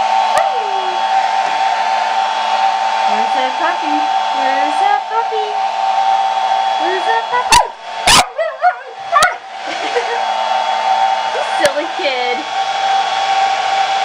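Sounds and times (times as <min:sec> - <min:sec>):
hair dryer whine: 0:00.0 - 0:14.0.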